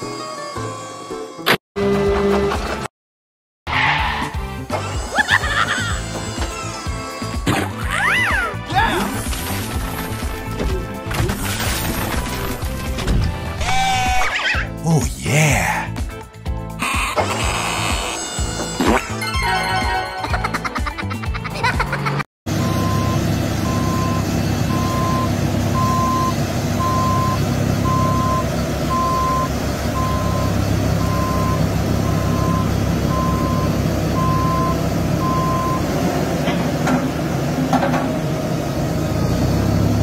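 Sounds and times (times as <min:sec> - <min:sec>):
heavy vehicle engine running: 0:22.5 - 0:40.0
back-up alarm beeping: 0:22.6 - 0:35.9.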